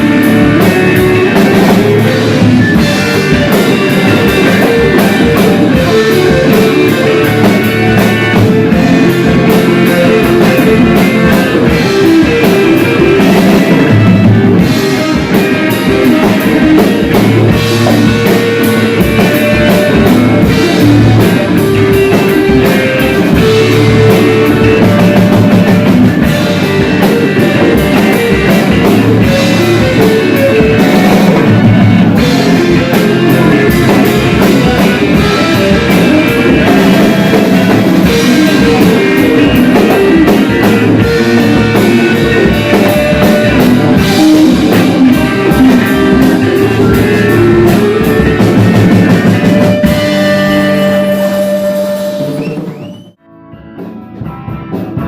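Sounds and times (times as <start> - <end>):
loud rock music: 0.0 - 55.0.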